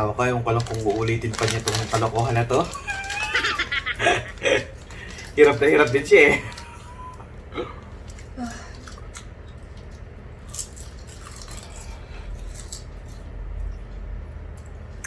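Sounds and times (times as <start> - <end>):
steady low hum: 0.0 - 15.0
utensil clicks and chewing: 8.0 - 15.0.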